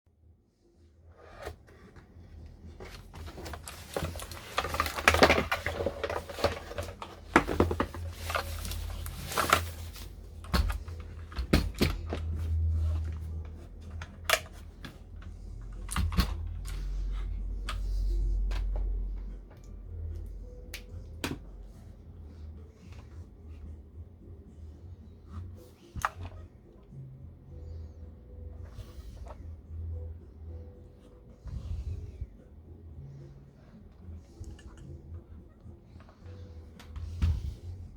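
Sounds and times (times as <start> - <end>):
low rumble: 27.2 - 33.0.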